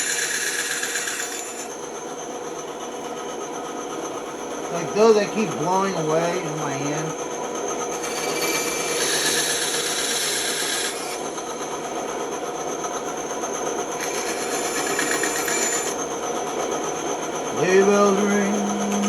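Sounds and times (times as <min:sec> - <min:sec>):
bandsaw running: 0:00.0 - 0:01.7, 0:07.9 - 0:11.3, 0:13.9 - 0:16.0, 0:17.5 - 0:19.0
saw blade cutting wood: 0:00.0 - 0:01.7, 0:08.0 - 0:11.2, 0:14.0 - 0:16.0.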